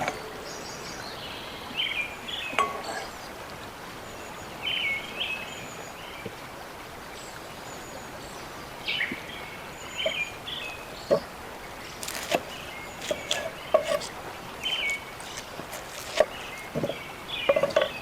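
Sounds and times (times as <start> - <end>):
small birds chirping: 11.8 - 17.0.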